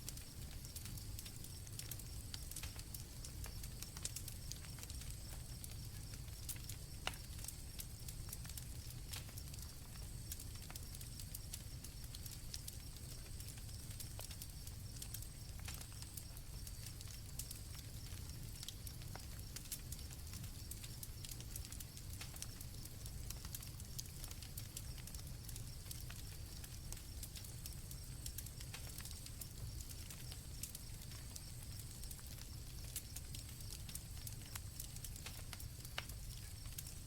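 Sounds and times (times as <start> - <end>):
campfire crackling and popping: 0.0 - 37.0
crickets trilling: 0.1 - 37.0.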